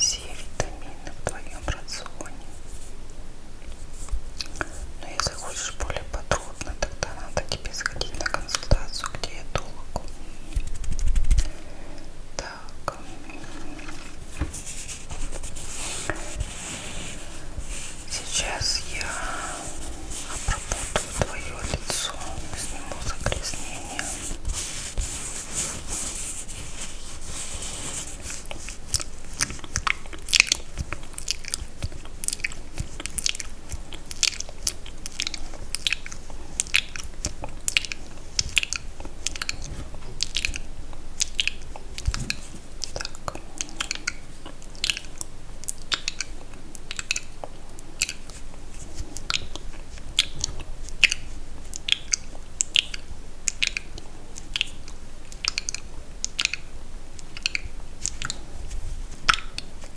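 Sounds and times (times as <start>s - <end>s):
wet mouth clicks and lip smacks: 4.4s - 11.5s, 28.5s - 58.4s, 59.1s - 59.9s.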